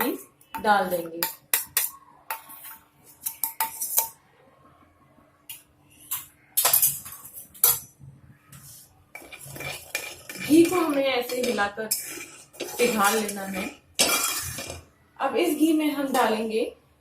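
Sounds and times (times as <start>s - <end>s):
metal spoon clinking and scraping pan: 0.0s - 4.2s, 6.0s - 8.0s, 9.1s - 14.9s.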